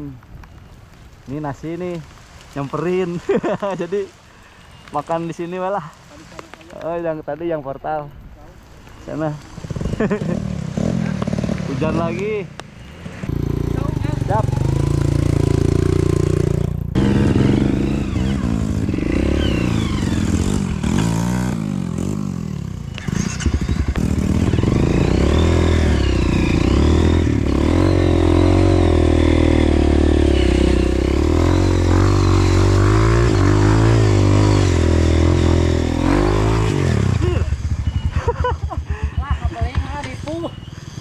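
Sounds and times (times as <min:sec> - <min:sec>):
motorcycle engine revving: 0:09.1 - 0:41.0.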